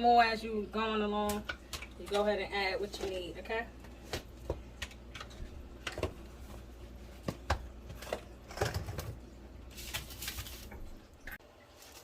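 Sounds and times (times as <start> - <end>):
low steady hum: 0.0 - 12.0
hands rustling in a bowl: 9.6 - 11.0.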